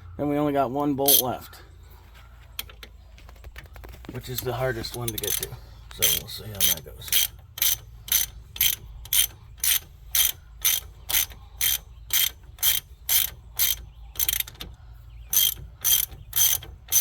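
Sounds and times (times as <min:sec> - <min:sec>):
ratchet wrench clicking: 0:04.4 - 0:17.0.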